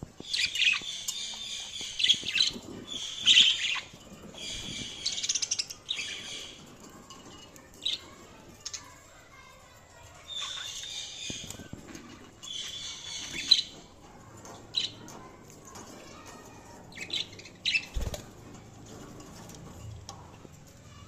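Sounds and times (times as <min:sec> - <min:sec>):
budgies chirping and warbling: 0:00.2 - 0:06.9, 0:10.0 - 0:19.1.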